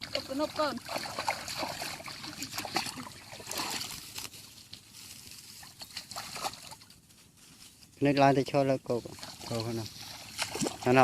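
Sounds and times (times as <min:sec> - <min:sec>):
water splashing and sloshing: 0:00.0 - 0:07.7, 0:08.9 - 0:11.0.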